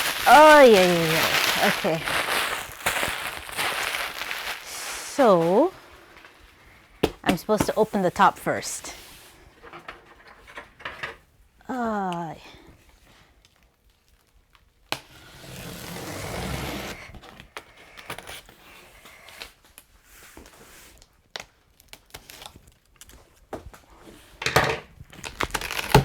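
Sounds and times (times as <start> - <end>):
cardboard scraping and tearing: 0.0 - 6.4, 15.0 - 17.4, 25.2 - 26.0
packaging rustling and knocking: 0.0 - 8.4, 24.4 - 26.0.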